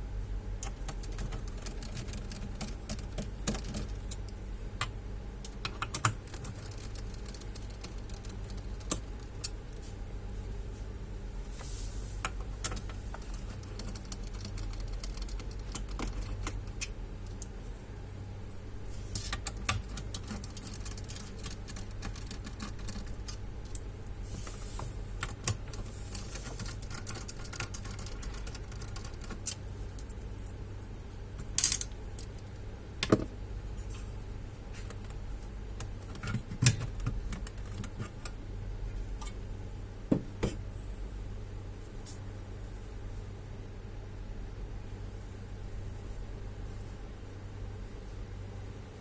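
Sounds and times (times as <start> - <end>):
low steady hum: 0.0 - 49.0.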